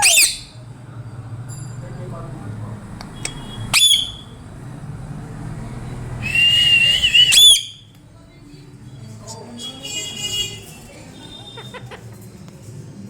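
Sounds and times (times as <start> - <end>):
parrot whistling: 0.0 - 0.5, 3.2 - 4.4, 6.2 - 7.9.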